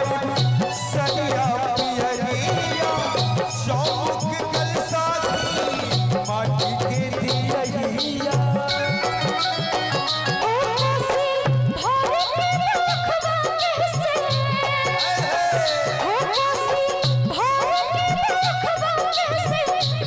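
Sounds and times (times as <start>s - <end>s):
rattling percussion: 0.0s - 20.0s
wavering melody: 8.4s - 12.0s.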